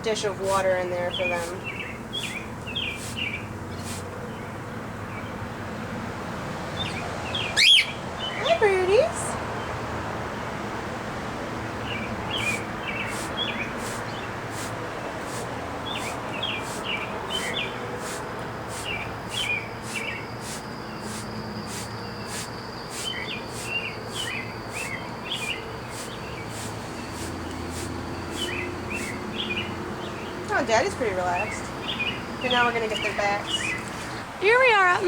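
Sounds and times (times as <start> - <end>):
birds chirping: 0.0 - 5.9, 6.7 - 9.8, 11.6 - 35.0
outdoor background noise: 0.0 - 35.0
faint high ticking: 12.4 - 29.3.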